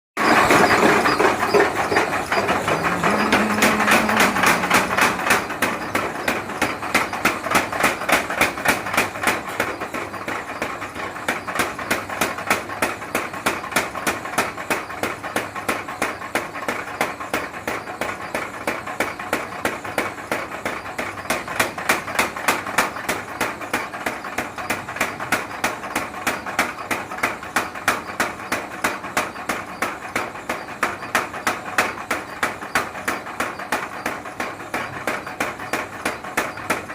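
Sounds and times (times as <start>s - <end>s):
hammer striking metal: 0.2s - 9.6s.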